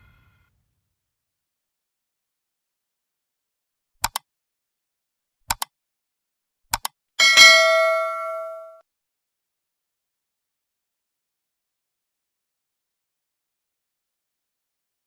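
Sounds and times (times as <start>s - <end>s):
mouse clicks: 4.0s - 4.3s, 5.5s - 5.7s, 6.7s - 7.0s
bright bell ding: 7.2s - 8.8s.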